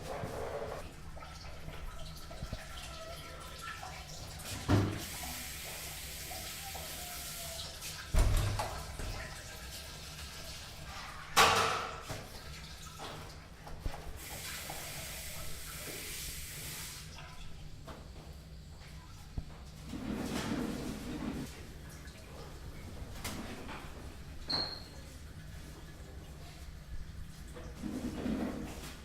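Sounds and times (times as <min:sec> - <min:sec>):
water running at a sink: 0:00.0 - 0:29.0
background hiss: 0:14.1 - 0:17.2.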